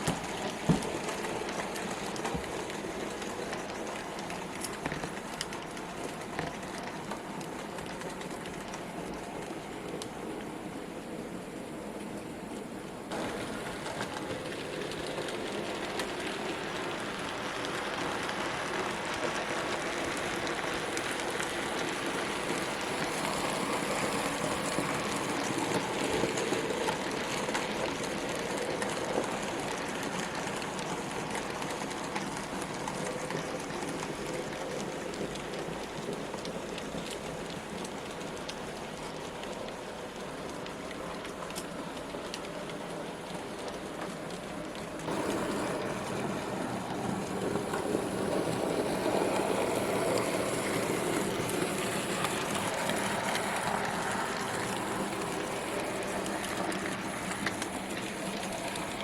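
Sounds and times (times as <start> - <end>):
model train wheels rattling on track: 13.1 - 59.0.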